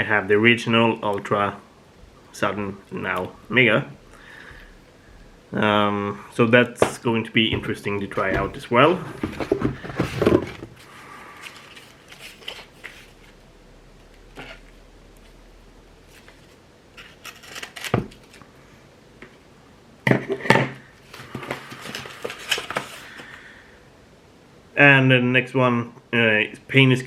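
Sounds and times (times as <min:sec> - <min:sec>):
packing material rustling: 0:08.2 - 0:13.4, 0:16.0 - 0:18.5.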